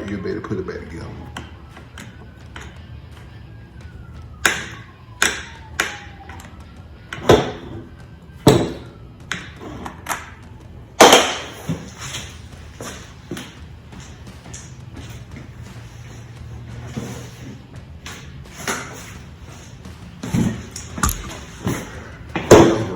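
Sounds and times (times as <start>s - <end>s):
tools clicking and knocking: 20.4s - 21.4s.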